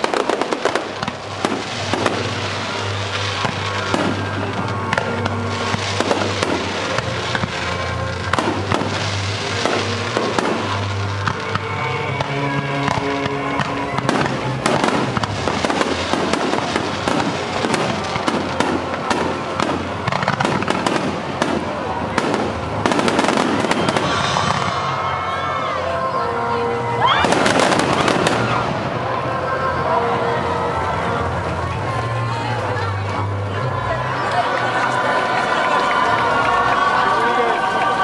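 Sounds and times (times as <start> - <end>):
fireworks crackling: 0.0 - 38.0
music over loudspeakers: 0.0 - 38.0.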